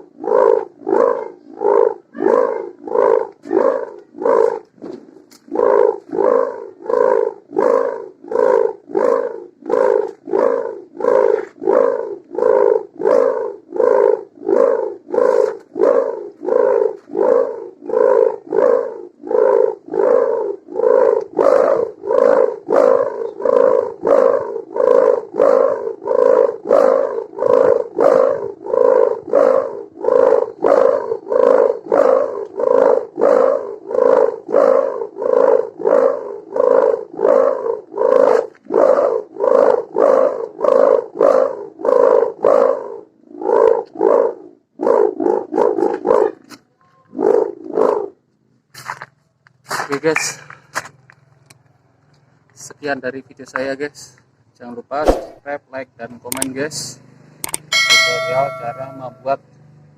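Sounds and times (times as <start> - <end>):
kite hummer pulsing drone: 57.7 - 59.3.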